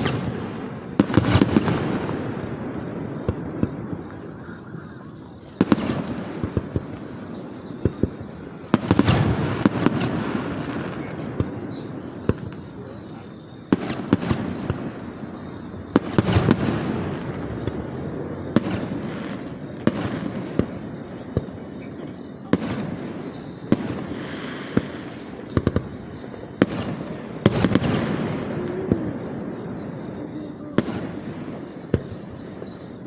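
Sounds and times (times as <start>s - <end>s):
fireworks shells bursting: 0.0s - 21.6s
fireworks rumble and crackle: 0.0s - 33.0s.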